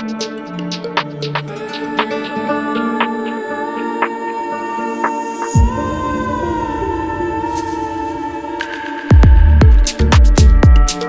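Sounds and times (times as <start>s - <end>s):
deep house music: 0.0s - 4.3s, 9.1s - 11.0s
sharp percussion hits: 5.4s - 11.0s
sustained synth and bass tones: 9.2s - 10.8s.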